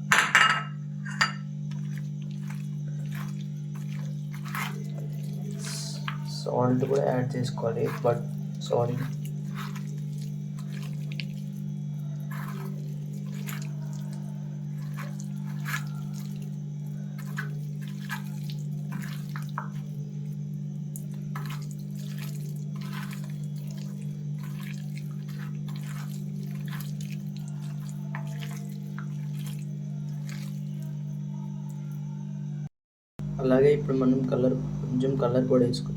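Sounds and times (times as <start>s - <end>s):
steady low hum: 0.0s - 35.9s
wet squelching of mixing by hand: 1.5s - 32.0s.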